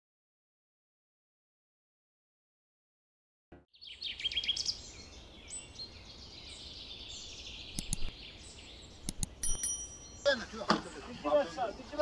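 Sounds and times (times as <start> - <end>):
birds singing and chirping: 3.8 - 12.0
steady outdoor hiss: 3.9 - 12.0.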